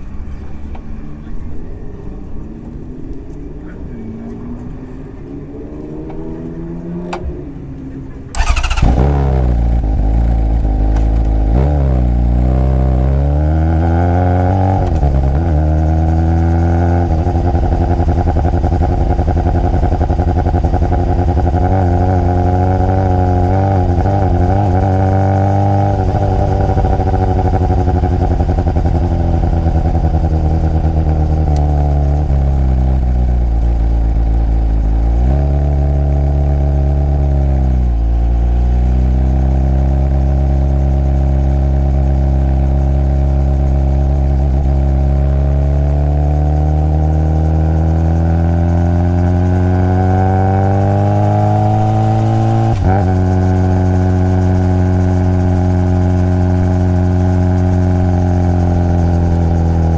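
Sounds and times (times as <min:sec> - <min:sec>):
motorcycle engine revving and idling: 0:00.0 - 0:59.9.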